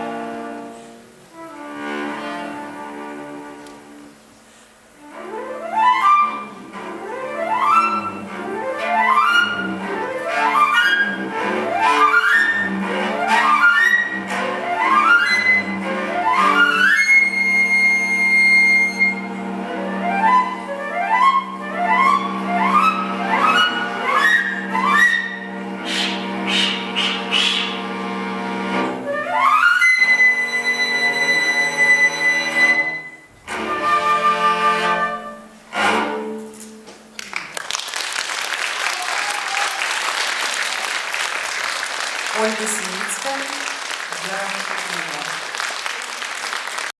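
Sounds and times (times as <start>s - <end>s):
cello: 0.0s - 37.2s
flute: 5.0s - 28.0s, 29.0s - 36.6s.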